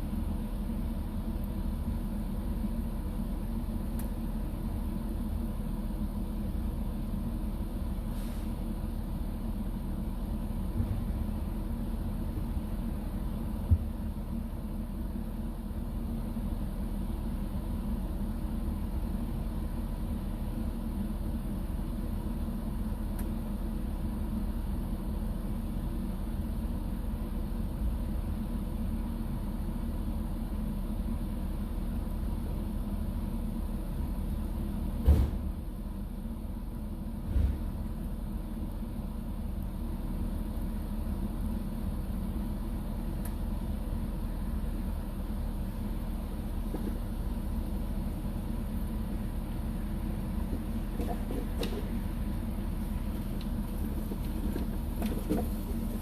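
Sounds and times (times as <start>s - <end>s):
faint steady hum: 0.0s - 56.0s
vehicle engine rumbling: 0.0s - 56.0s
short knock: 35.0s - 35.5s.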